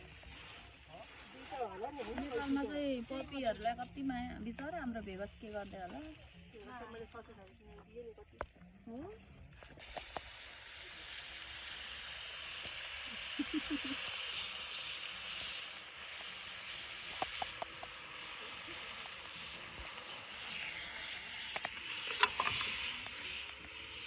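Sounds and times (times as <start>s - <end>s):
food sizzling in a pan: 0.0s - 7.8s, 9.8s - 24.0s
utensil clicking against pan: 21.0s - 23.8s.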